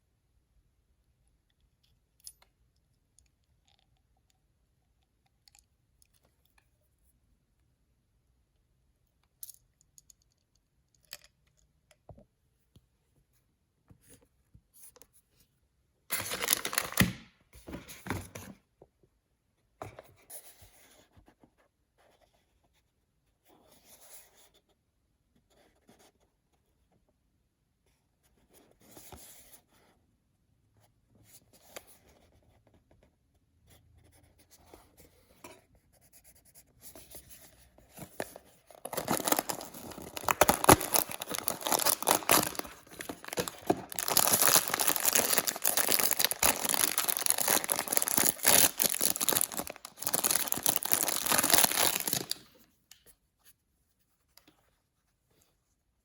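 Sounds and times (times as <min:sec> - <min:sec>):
paper scratching and rustling: 0:16.1 - 0:17.1, 0:38.0 - 0:52.4
paper packaging tearing: 0:16.1 - 0:17.2, 0:38.1 - 0:52.4.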